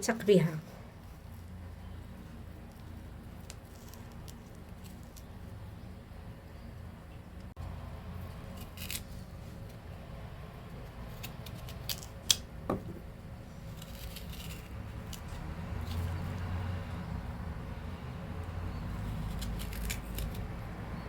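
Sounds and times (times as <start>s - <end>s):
spoon scraping turnip: 13.5s - 16.5s, 18.7s - 20.6s.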